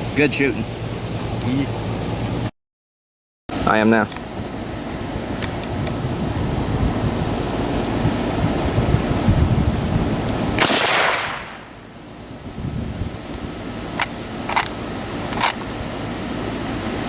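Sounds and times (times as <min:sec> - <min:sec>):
rifle shot with echo: 0:10.6 - 0:11.7.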